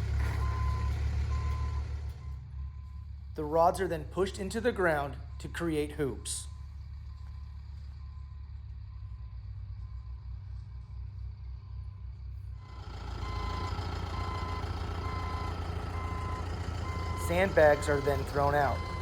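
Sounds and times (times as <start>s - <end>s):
vehicle engine running: 0.0s - 19.0s
reversing alarm beeping: 0.3s - 3.1s, 12.6s - 19.0s.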